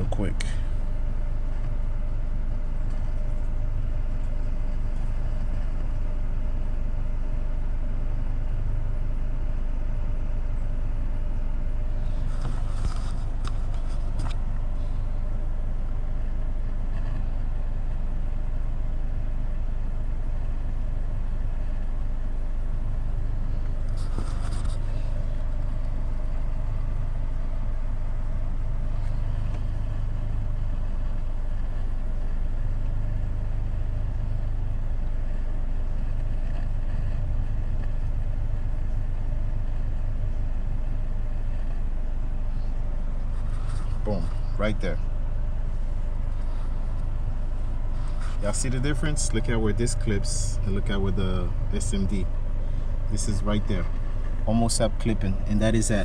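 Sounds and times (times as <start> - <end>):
low bass test tone: 0.0 - 56.0
scratchy handling noises: 12.1 - 14.4, 23.7 - 25.2.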